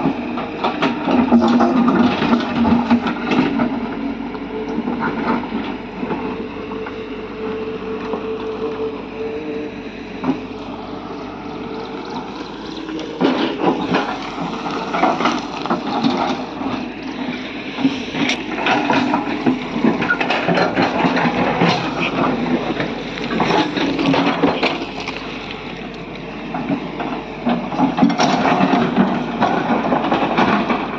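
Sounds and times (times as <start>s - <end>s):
excavator diesel engine under load: 0.0s - 30.9s
rocks clattering and scraping: 11.5s - 30.9s.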